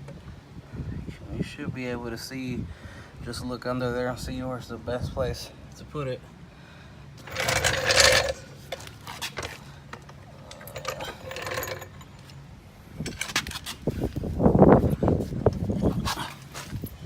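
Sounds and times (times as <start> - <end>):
floor jack clinking and rattling: 7.2 - 9.6, 10.5 - 12.4.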